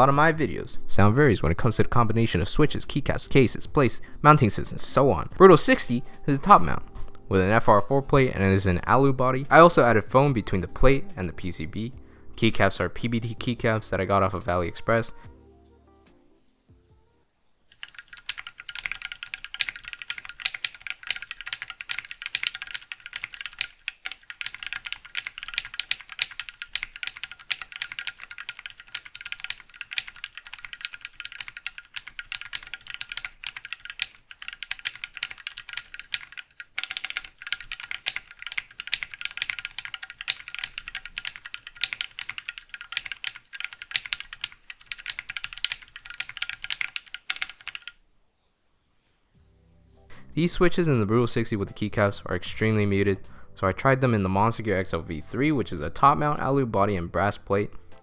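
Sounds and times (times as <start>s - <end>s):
muted mechanical keyboard typing: 17.7s - 48.0s.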